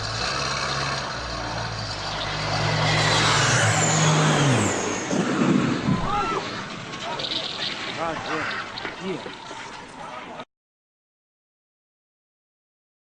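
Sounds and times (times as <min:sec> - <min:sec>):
aircraft engine noise: 0:01.1 - 0:10.3.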